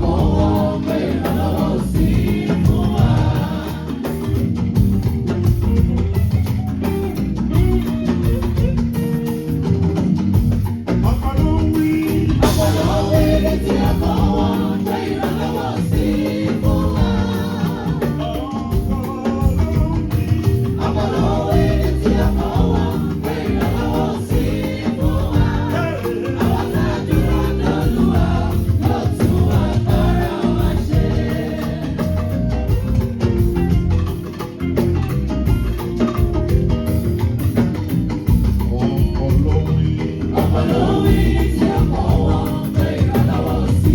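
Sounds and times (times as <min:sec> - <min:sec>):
choir singing gospel: 0:00.0 - 0:05.9, 0:10.8 - 0:36.8, 0:37.4 - 0:43.9
bass guitar: 0:00.0 - 0:43.9
drums: 0:00.0 - 0:43.9.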